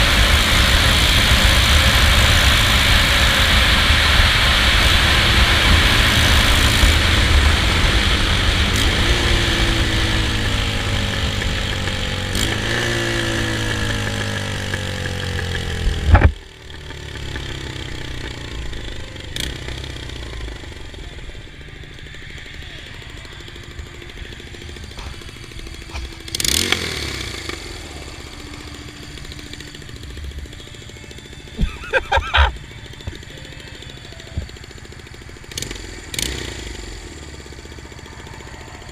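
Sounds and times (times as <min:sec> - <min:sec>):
motorcycle engine with exhaust leak: 0:00.0 - 0:38.9.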